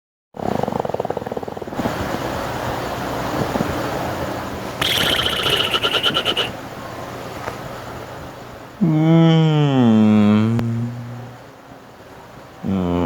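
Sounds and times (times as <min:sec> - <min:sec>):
vocal engine-like buzz: 0:04.7 - 0:06.6, 0:08.8 - 0:11.6, 0:12.5 - 0:13.0
high pulsing alarm-like vocal tone: 0:04.8 - 0:06.5
breathy rushing vocal noise: 0:04.8 - 0:06.6.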